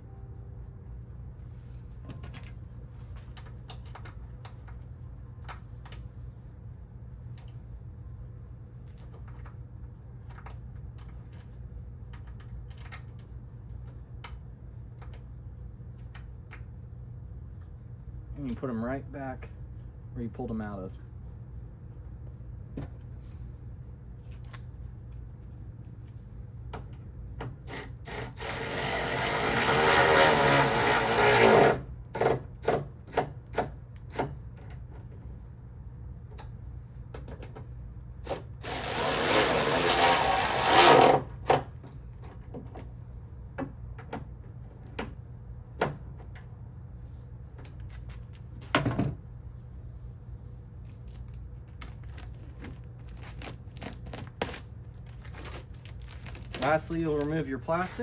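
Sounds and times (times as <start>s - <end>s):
power drill driving bolts: 27.6s - 34.3s, 38.2s - 42.0s.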